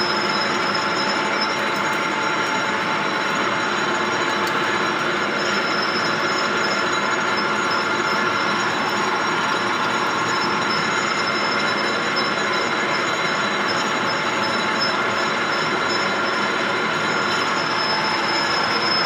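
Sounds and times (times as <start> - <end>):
metal lathe whirring: 0.0 - 19.0
high whining tones: 13.2 - 19.0.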